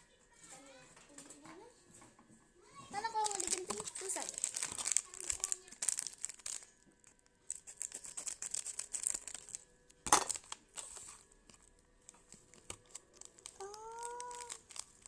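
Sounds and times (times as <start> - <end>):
plastic packaging crinkling: 3.0 - 15.0
plastic packaging ripping: 3.1 - 15.0
high-pitched voice: 13.5 - 14.7.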